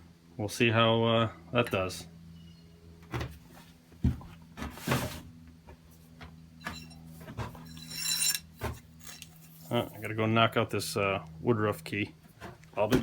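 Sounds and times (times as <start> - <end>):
low hum: 6.4 - 10.2
metal parts clunking: 6.6 - 9.9.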